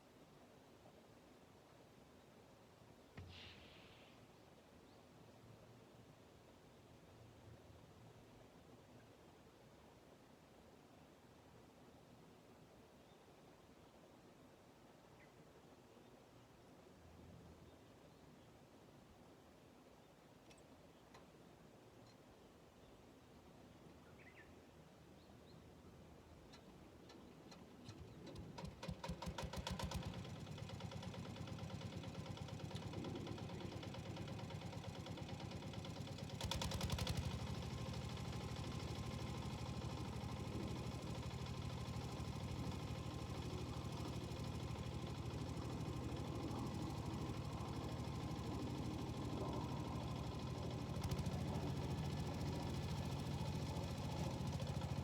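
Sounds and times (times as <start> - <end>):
diesel engine starting and running: 27.9 - 55.0.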